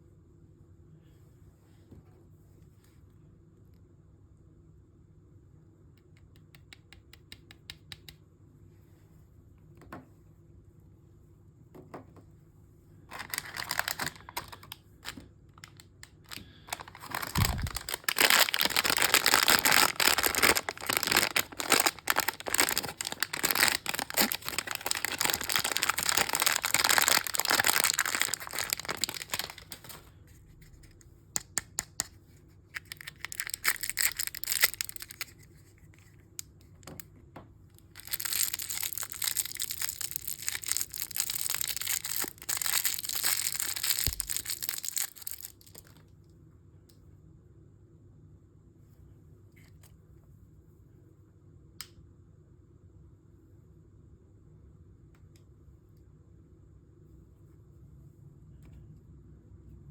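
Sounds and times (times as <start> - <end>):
packaging crinkling and tearing: 13.1 - 30.1, 32.7 - 35.7, 37.9 - 46.0.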